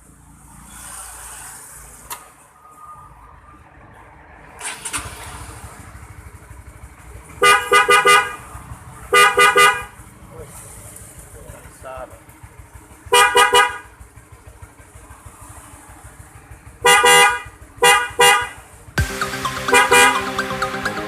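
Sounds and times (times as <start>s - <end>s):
motorcycle engine running: 5.4s - 20.2s.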